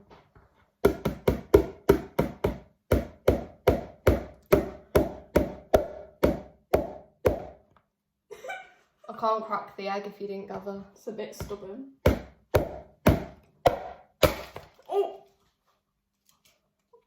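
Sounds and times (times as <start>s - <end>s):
egg knocking on bowl rim: 0.9s - 7.6s.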